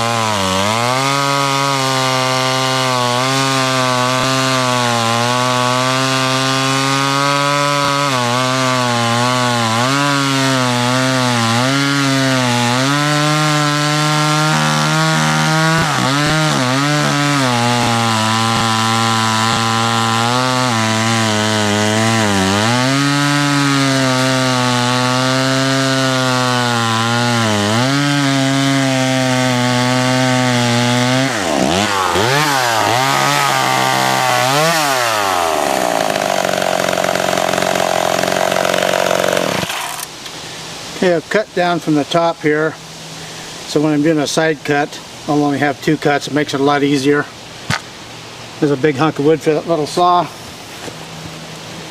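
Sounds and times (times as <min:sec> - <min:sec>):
chainsaw cutting wood: 0:00.0 - 0:40.4.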